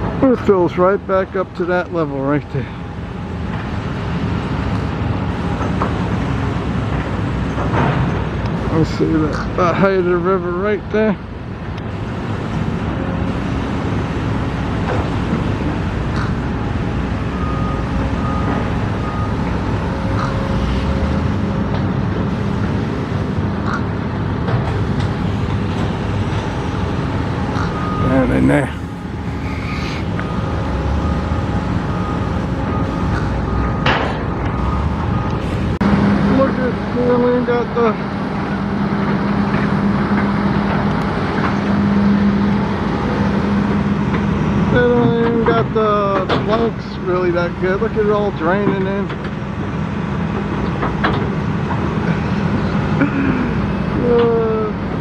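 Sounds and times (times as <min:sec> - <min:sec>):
engine humming: 0:00.0 - 0:55.0
low mechanical rumble: 0:00.0 - 0:55.0
rushing noise: 0:11.2 - 0:44.8
reversing alarm beeping: 0:16.5 - 0:21.7, 0:26.3 - 0:36.5.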